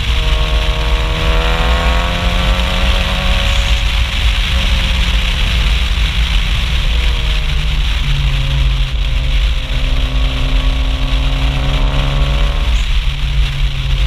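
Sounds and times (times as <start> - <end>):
car exhaust roaring: 0.0 - 14.0
wind rush over microphone: 0.0 - 14.0.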